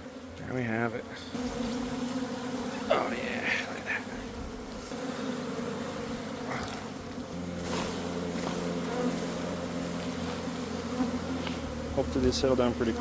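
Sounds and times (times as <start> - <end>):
bee colony buzzing: 0.0 - 13.0.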